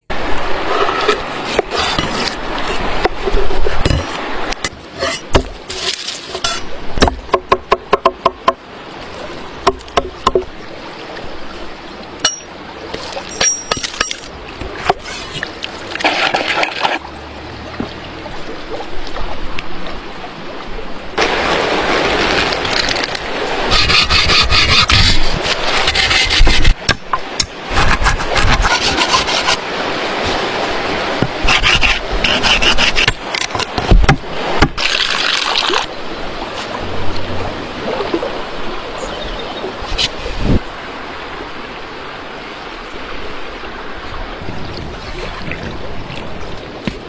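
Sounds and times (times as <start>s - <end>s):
scraping or rubbing: 0.6s - 4.1s, 22.2s - 26.8s, 27.7s - 29.6s, 31.4s - 33.7s.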